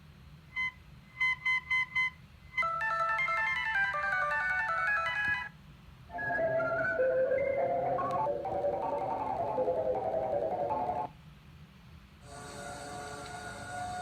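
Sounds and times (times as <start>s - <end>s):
synthesized ringtone notes: 1.2s - 5.5s, 6.1s - 11.1s
melodic electronic tone: 2.6s - 5.3s, 6.1s - 11.1s.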